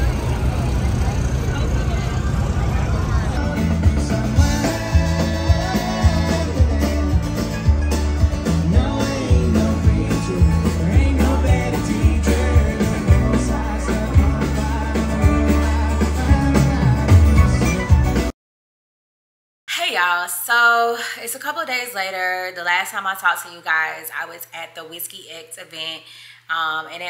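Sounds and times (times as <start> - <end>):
rock song with singer: 3.3 - 18.3.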